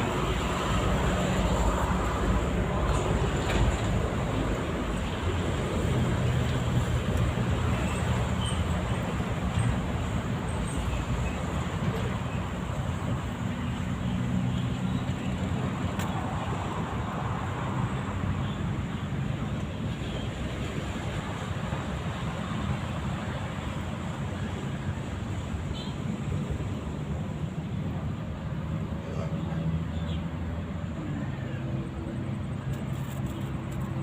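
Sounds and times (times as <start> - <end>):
low rumble of road traffic: 0.0 - 34.0.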